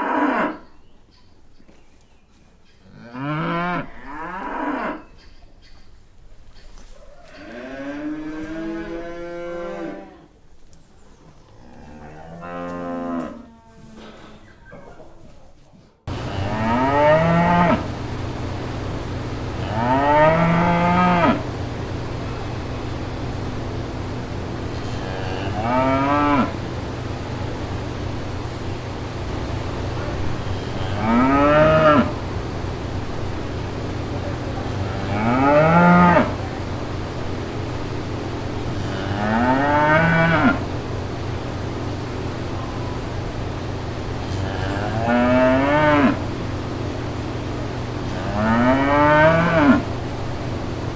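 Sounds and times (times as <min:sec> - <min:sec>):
cattle mooing: 0:00.0 - 0:00.6, 0:02.9 - 0:05.1, 0:07.3 - 0:10.3, 0:11.6 - 0:14.0, 0:16.1 - 0:28.1, 0:29.4 - 0:32.4, 0:34.6 - 0:36.6, 0:38.7 - 0:40.8, 0:44.2 - 0:46.4, 0:48.0 - 0:50.0
steady low hum: 0:16.1 - 0:50.9.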